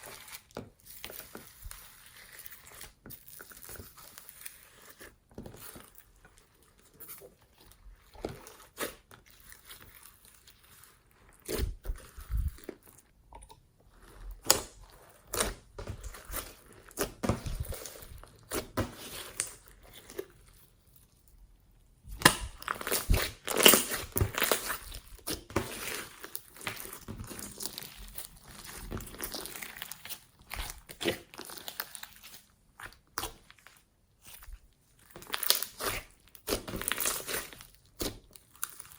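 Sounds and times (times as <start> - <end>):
slime squished by hand: 22.1 - 38.9.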